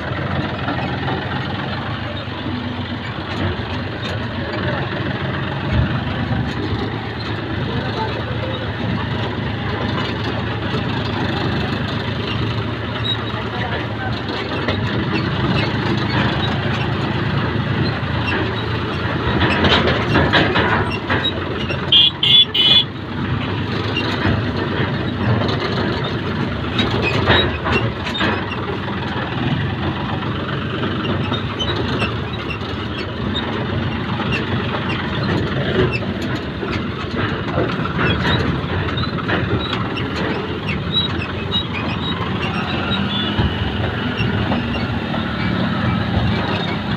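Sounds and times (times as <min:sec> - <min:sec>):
engine running under load: 0:00.0 - 0:46.9.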